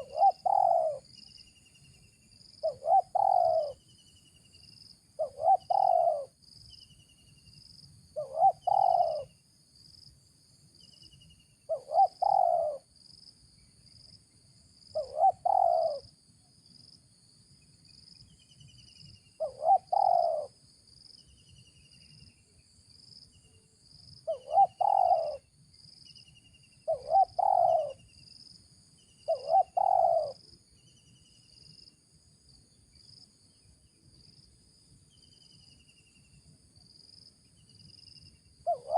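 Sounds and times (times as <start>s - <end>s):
dove cooing: 0.0s - 1.1s, 2.6s - 3.8s, 5.2s - 6.4s, 8.2s - 9.3s, 11.7s - 12.9s, 14.9s - 16.1s, 19.4s - 20.6s, 24.2s - 25.4s, 26.8s - 28.0s, 29.2s - 30.5s, 38.6s - 38.9s.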